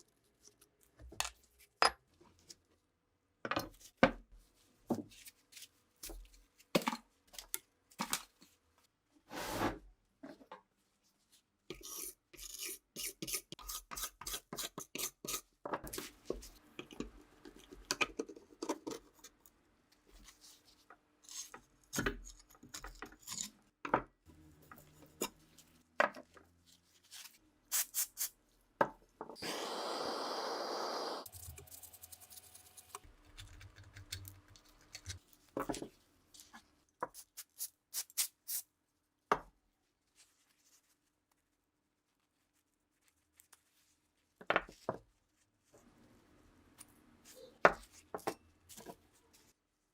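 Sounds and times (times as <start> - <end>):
steady hiss: 29.5 - 31.3.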